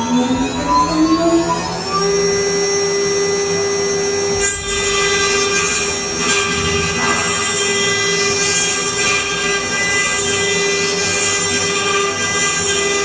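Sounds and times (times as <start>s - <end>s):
machine spindle whine: 0.0s - 13.0s
cutter grinding hiss: 1.9s - 13.0s.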